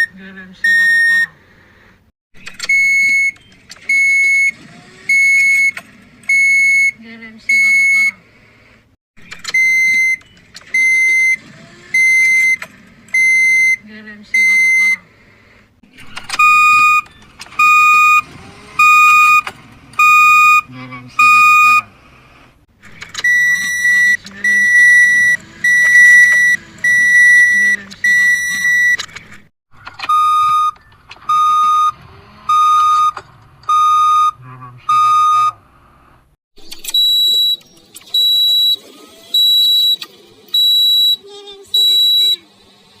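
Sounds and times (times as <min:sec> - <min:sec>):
high-pitched car warning beeps: 0:09.5 - 0:13.8, 0:14.4 - 0:15.0, 0:16.3 - 0:21.9, 0:23.2 - 0:29.0, 0:30.0 - 0:35.6, 0:36.9 - 0:42.4
car warning chime beeping: 0:16.4 - 0:18.2, 0:18.8 - 0:21.9, 0:30.1 - 0:35.6.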